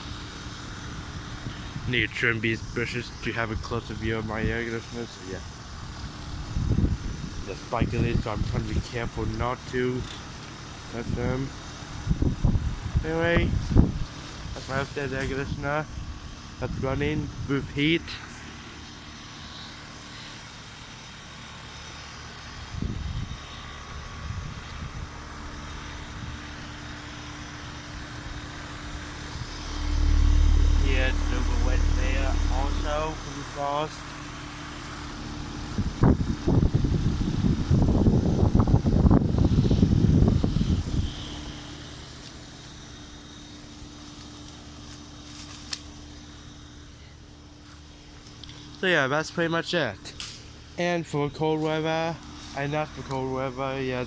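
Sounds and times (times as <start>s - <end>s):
compressor low hum: 0.0s - 54.0s
heat pump fan whoosh: 0.0s - 54.0s
brief low rumble: 28.4s - 33.6s.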